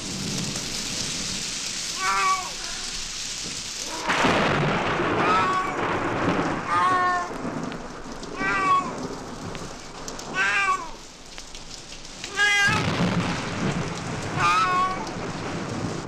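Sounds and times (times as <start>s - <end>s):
steady rain: 0.0s - 16.0s
thunder rumble: 0.0s - 16.0s
cat meowing: 2.0s - 3.1s, 5.1s - 7.5s, 8.3s - 9.1s, 10.3s - 11.0s, 12.2s - 13.0s, 14.3s - 15.2s.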